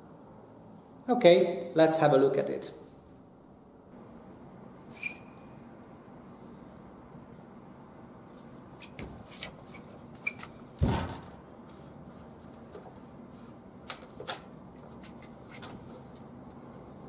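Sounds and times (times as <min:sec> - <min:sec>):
heavy thump: 0:10.8 - 0:11.4.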